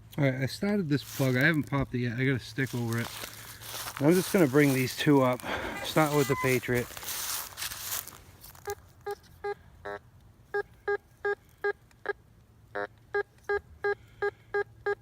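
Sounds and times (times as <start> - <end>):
buzzy metal detector tone: 5.5 - 6.9
metal detector beeps: 5.8 - 6.8.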